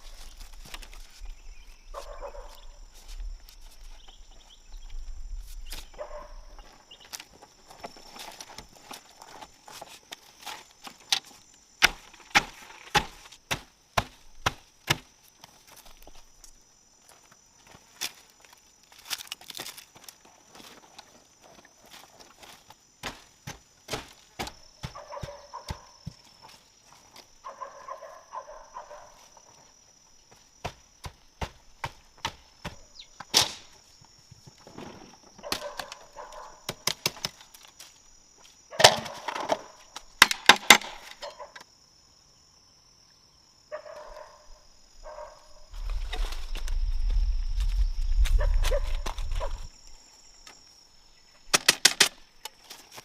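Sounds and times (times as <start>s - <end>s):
high insect drone: 0.0s - 53.0s
bamboo knocks and cracks: 9.7s - 16.2s, 17.9s - 20.7s, 22.4s - 26.3s, 30.6s - 33.8s, 35.4s - 38.0s, 38.7s - 41.7s, 51.4s - 53.0s.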